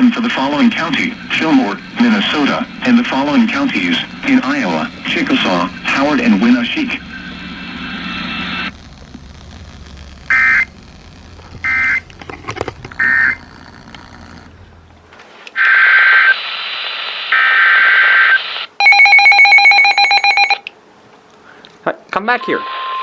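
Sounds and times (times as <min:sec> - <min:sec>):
digital data bursts: 0:00.0 - 0:12.1, 0:12.9 - 0:13.4
loud pulsing alert tone: 0:00.9 - 0:12.1.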